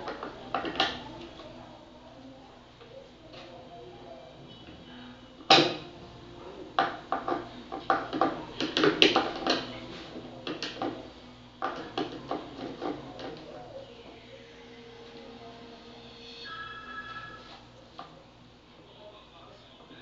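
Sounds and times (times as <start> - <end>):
plastic fan parts knocking: 6.7 - 13.8
plastic parts clicking and tapping: 6.8 - 9.7, 10.4 - 11.0.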